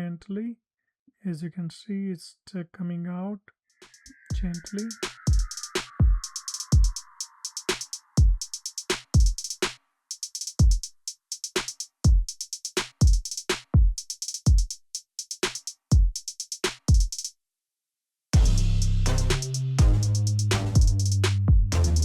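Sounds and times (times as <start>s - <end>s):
drum-machine beat: 3.8s - 17.3s, 18.4s - 22.0s.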